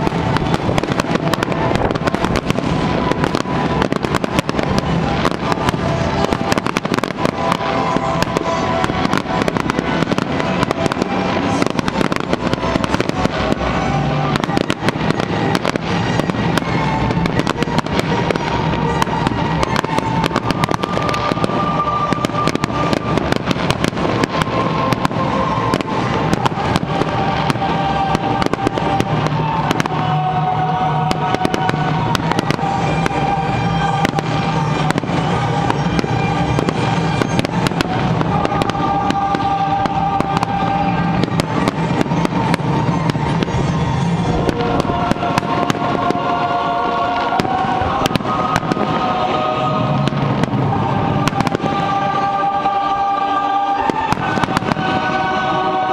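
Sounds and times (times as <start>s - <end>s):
fireworks crackling and popping: 0.0s - 55.9s
music with held notes: 0.0s - 55.9s.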